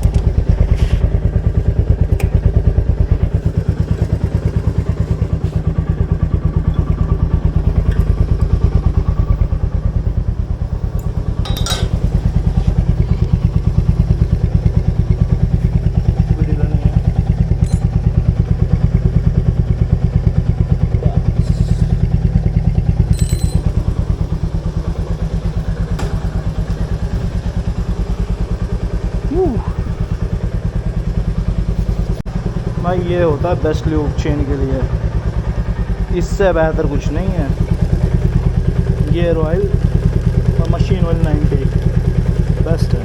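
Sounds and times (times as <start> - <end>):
motorcycle engine idling: 0.0 - 43.0
sharp metallic clicks: 17.6 - 18.0.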